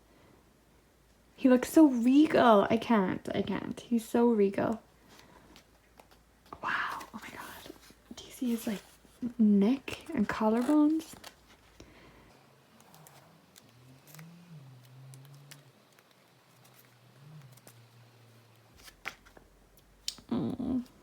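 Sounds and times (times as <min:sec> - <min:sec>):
pages turning: 0:06.9 - 0:11.8, 0:12.8 - 0:18.0, 0:18.7 - 0:19.5.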